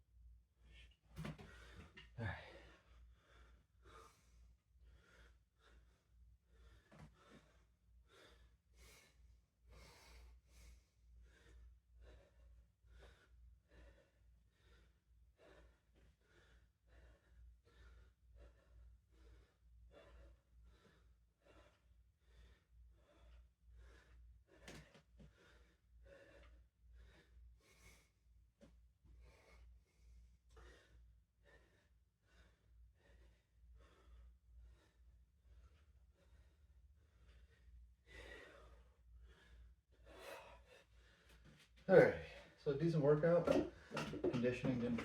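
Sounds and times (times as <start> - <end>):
man breathing hard: 1.3 - 28.3, 29.1 - 45.0.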